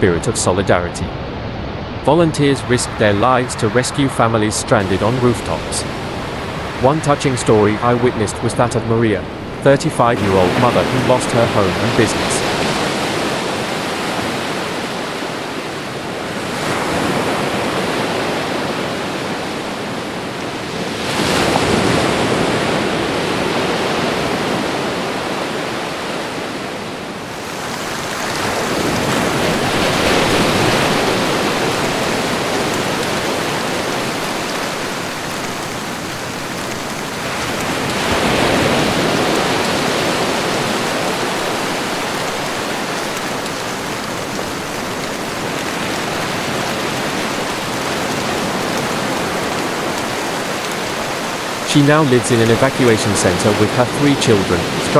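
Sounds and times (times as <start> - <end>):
rushing storm wind: 0.0 - 54.9
rushing water: 0.0 - 54.9.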